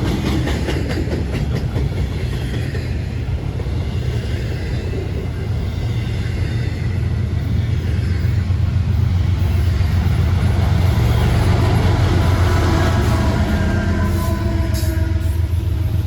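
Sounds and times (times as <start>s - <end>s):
freight train rumbling past: 0.0s - 16.0s.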